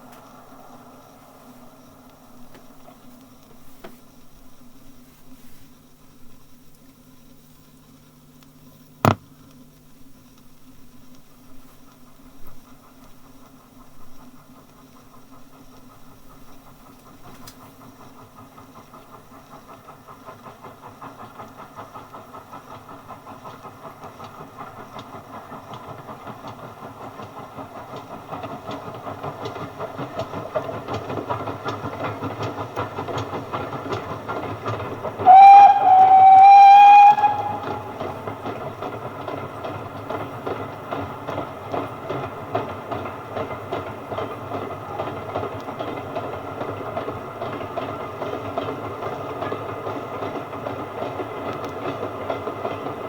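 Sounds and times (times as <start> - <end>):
train approaching: 0.0 - 8.2, 9.8 - 53.0
locomotive whistle: 34.7 - 38.9.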